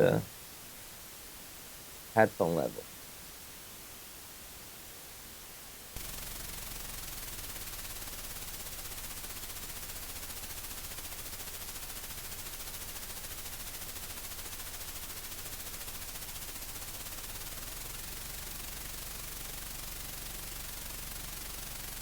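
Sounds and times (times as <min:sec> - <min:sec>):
faint hiss: 0:00.0 - 0:22.0
rapid even ticking: 0:06.0 - 0:22.0.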